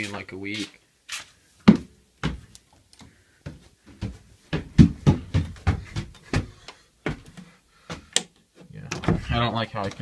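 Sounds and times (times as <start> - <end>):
handling knocks and clicks: 8.2 - 10.0.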